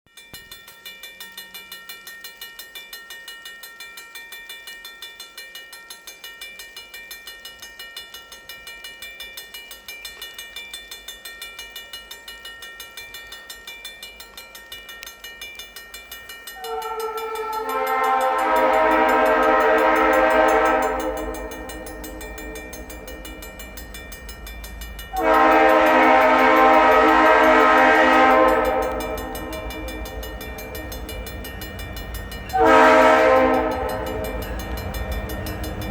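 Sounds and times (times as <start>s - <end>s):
crossing warning bell ringing: 11.5s - 35.9s
locomotive air horn blasts: 16.6s - 23.3s, 25.1s - 31.0s, 32.5s - 34.4s
locomotive engine rumble: 16.6s - 35.9s.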